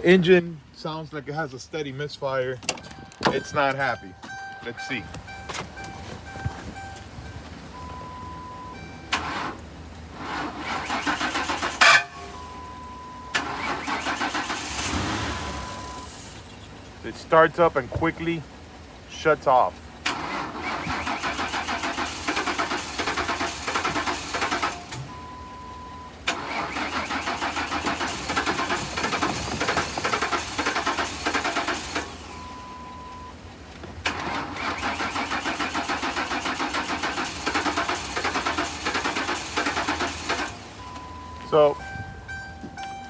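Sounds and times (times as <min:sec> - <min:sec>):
short steady beep: 0:02.8 - 0:09.1, 0:40.8 - 0:43.0
engine cranking by starter: 0:09.0 - 0:12.2, 0:13.3 - 0:16.7, 0:20.0 - 0:25.4, 0:26.2 - 0:32.6, 0:34.0 - 0:41.8.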